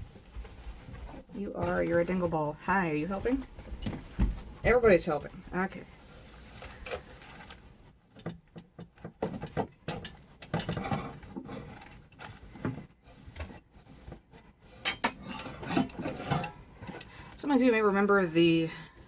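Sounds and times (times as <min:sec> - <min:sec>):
kitchen items clattering: 0:06.7 - 0:13.0, 0:14.7 - 0:18.0.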